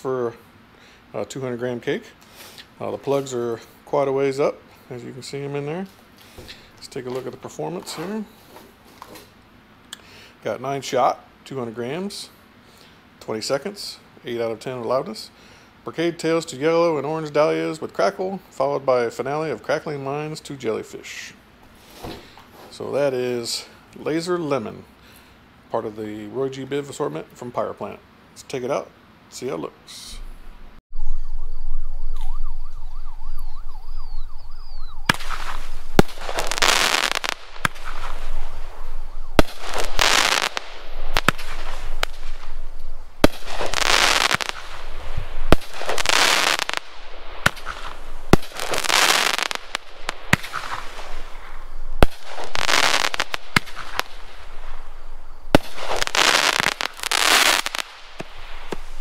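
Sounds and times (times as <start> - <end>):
firework shots and breaks: 35.0 - 59.0
firework crackle: 35.1 - 59.0.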